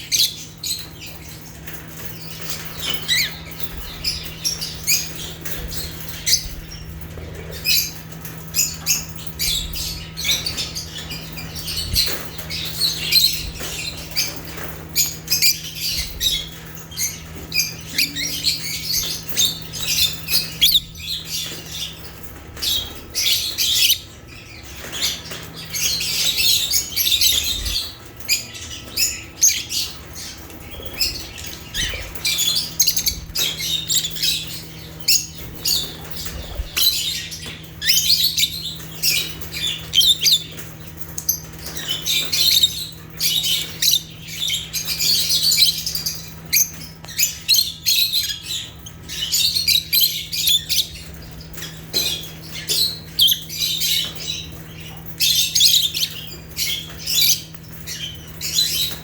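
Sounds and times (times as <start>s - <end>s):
lovebirds chirping and squawking: 0.0s - 59.0s.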